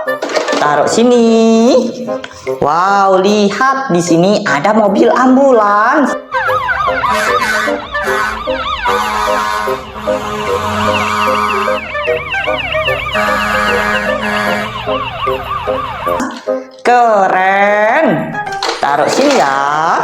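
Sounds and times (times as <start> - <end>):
ambulance siren yelping: 5.8 - 16.8
steady horn-like tones: 7.0 - 15.4.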